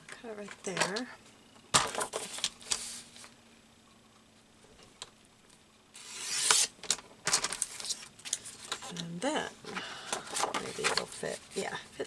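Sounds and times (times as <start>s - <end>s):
paper rustling: 1.8s - 3.3s, 6.0s - 9.1s, 10.1s - 11.7s.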